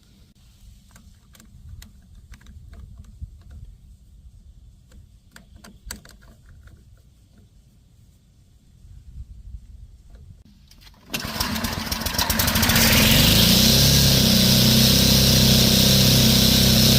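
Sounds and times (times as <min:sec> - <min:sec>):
small parts clicking and tapping: 0:00.8 - 0:03.7, 0:04.8 - 0:07.5.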